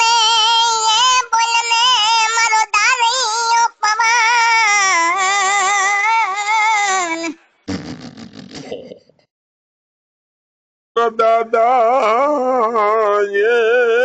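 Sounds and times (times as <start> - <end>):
high-pitched voice singing: 0.0 - 7.4.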